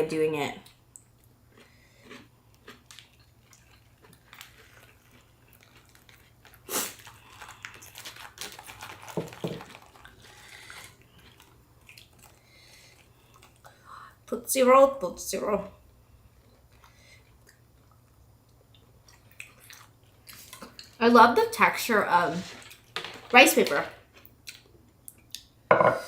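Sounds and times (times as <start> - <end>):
chewing and crunching: 1.0 - 13.8, 16.2 - 21.0.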